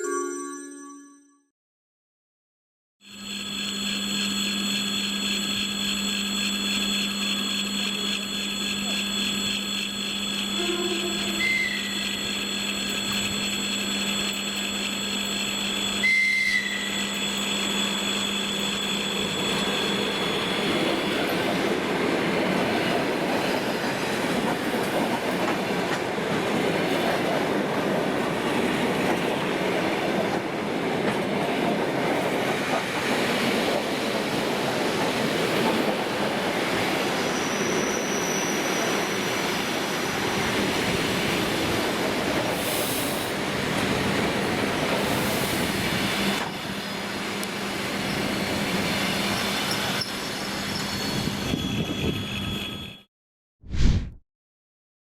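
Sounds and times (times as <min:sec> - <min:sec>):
train hum and high whine: 0:03.0 - 0:53.1
high wheel squeal: 0:03.4 - 0:21.5, 0:36.8 - 0:39.6, 0:48.0 - 0:53.1.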